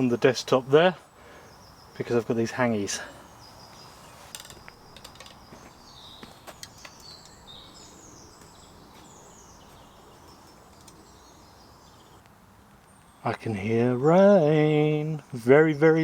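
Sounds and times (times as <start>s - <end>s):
faint woodland background noise: 0.0s - 16.0s
songbird singing: 0.0s - 16.0s
faint clicks and knocks: 4.3s - 5.7s, 10.2s - 11.0s.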